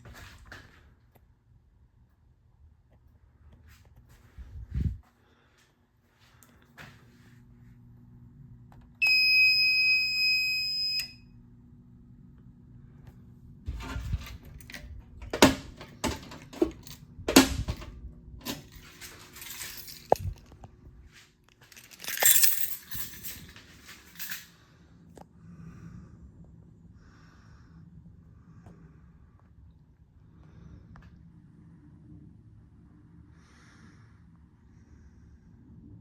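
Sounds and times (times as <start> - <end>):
high-pitched electronic alarm tone: 9.0 - 11.2
short rattle: 21.6 - 24.5.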